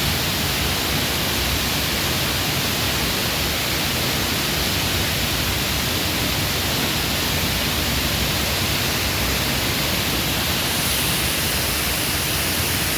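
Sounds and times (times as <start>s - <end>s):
waterfall rushing: 8.0s - 12.9s.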